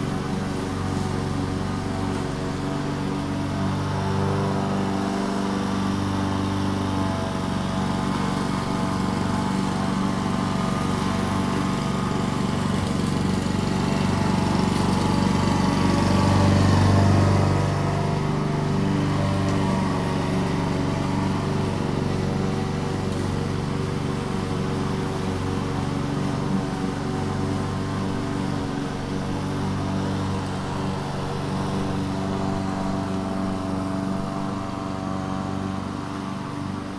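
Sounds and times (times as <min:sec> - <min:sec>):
lawn mower engine running: 0:00.0 - 0:36.9.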